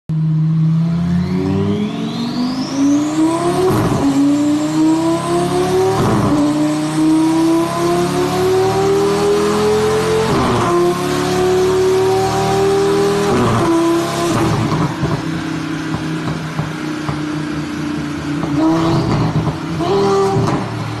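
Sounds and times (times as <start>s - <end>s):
sports car accelerating with upshifts: 0.1s - 21.0s.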